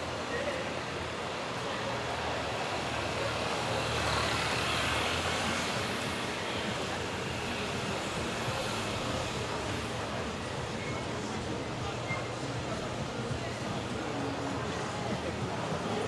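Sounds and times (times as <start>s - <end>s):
traffic noise: 0.0s - 16.0s
tyres hissing on wet road: 2.2s - 10.2s.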